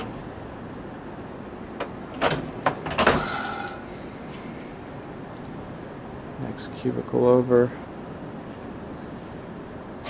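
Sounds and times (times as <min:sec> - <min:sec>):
metal drawer sliding scrape: 0:02.2 - 0:03.8
brief metallic ringing tone: 0:03.2 - 0:03.9.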